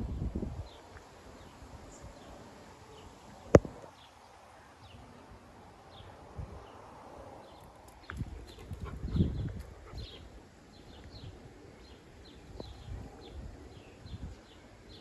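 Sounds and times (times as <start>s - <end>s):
birds chirping faintly: 0.6s - 15.0s.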